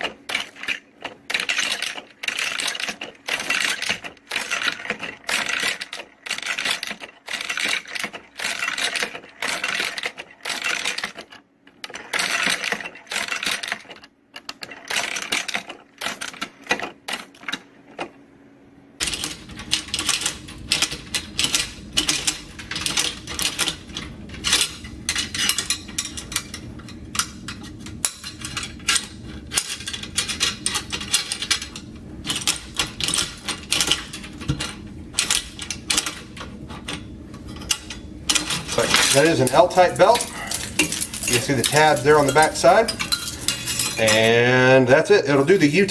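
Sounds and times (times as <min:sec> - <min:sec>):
belt loader metallic clacks: 0:20.0 - 0:44.4.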